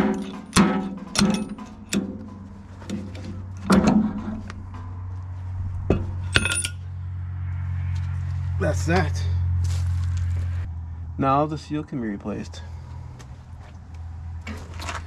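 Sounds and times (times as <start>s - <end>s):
hammer knocking on metal: 0.0s - 5.0s, 5.8s - 6.5s
low hum: 0.0s - 11.2s.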